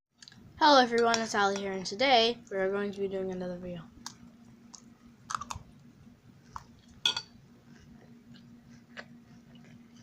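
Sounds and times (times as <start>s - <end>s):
faint steady hum: 0.2s - 10.0s
spoon clinking against bowl: 7.0s - 7.3s.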